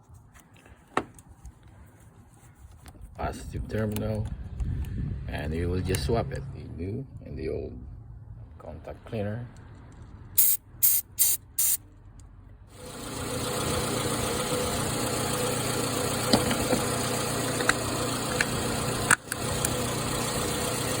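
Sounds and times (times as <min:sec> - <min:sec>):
spray can hissing: 0:10.4 - 0:11.8
car engine idling: 0:12.7 - 0:21.0.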